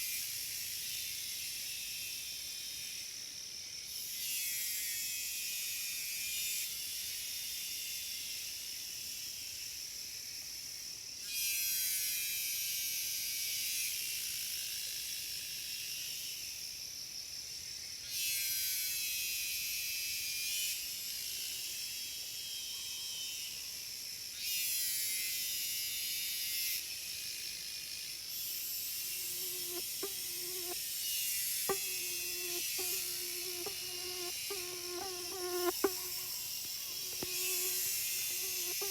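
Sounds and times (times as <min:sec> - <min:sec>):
cicadas buzzing: 0:28.3 - 0:38.9.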